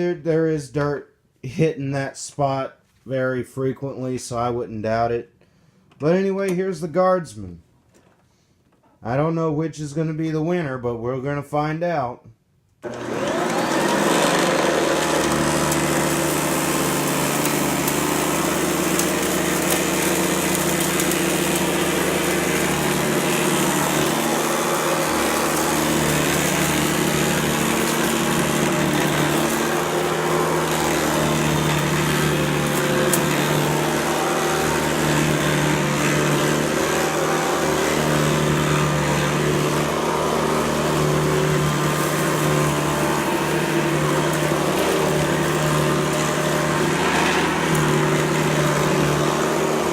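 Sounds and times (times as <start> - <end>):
vacuum cleaner running: 12.8 - 49.9.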